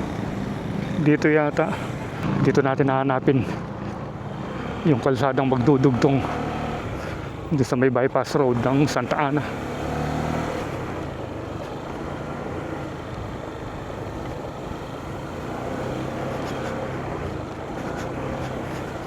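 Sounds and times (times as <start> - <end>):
road and wind noise: 0.0 - 19.0
vehicle engine running: 8.3 - 19.0.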